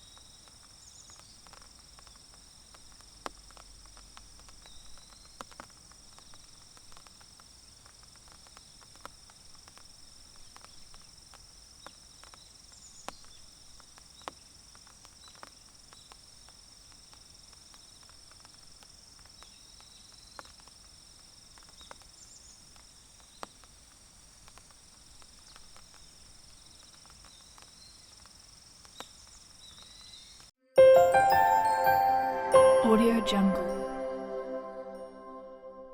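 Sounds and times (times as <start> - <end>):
raindrops on leaves: 0.0 - 30.5
short high chirps: 30.8 - 35.9.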